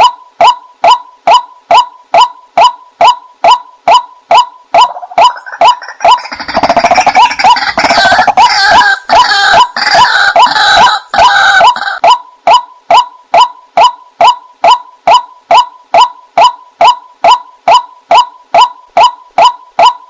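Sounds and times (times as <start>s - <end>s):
waterhen short calls: 3.9s - 12.2s
rough croaking bird calls: 4.0s - 12.0s.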